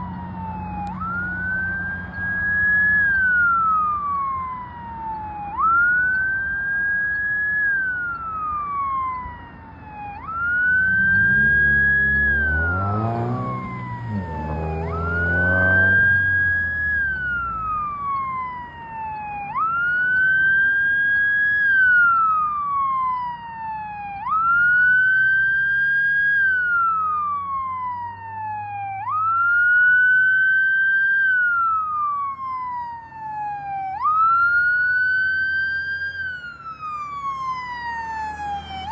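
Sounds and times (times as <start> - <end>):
vehicle passing by: 0.0 - 4.8, 10.2 - 18.8, 32.2 - 38.9
ambulance siren wailing: 0.0 - 38.9.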